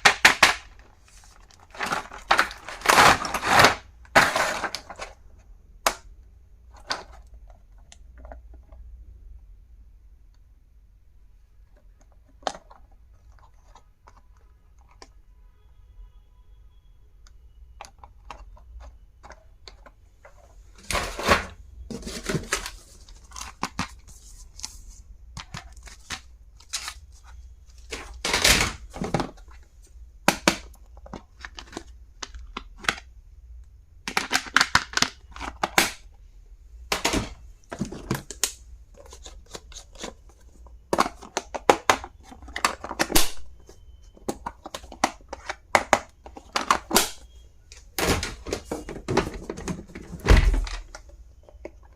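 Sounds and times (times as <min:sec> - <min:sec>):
stationery packaging handled: 0:00.0 - 0:05.4, 0:17.8 - 0:33.0, 0:36.9 - 0:51.9.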